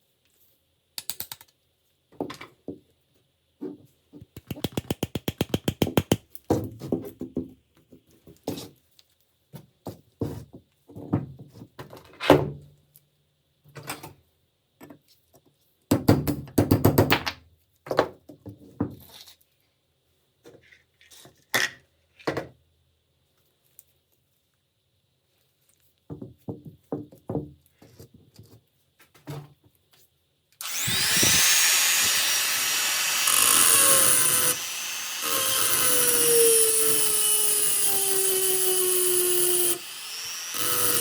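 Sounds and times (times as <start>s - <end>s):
rapid tapping strikes: 4.4s - 6.3s.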